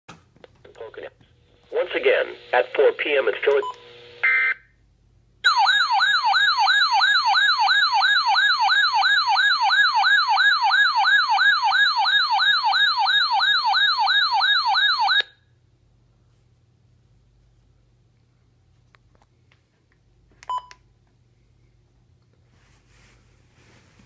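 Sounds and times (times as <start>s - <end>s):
warbling alert siren: 5.4s - 15.4s.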